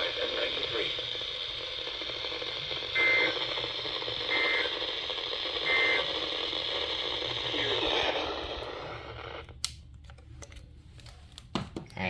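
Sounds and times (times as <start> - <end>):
buzzy digital tone bursts: 0.0 - 8.3
steady radio hiss: 0.0 - 9.7.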